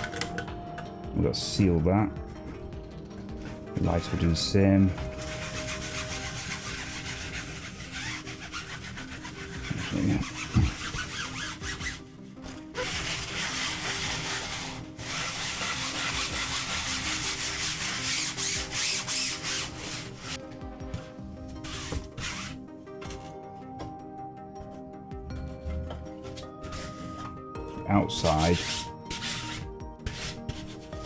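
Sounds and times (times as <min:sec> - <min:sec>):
scraping plastic part: 0:00.0 - 0:00.9
background music: 0:00.0 - 0:31.0.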